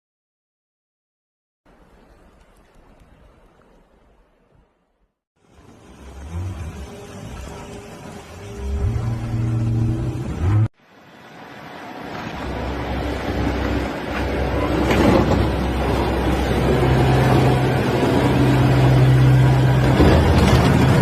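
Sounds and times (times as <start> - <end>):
wash of noise: 5.4 - 21.0
steady low drone: 5.7 - 21.0.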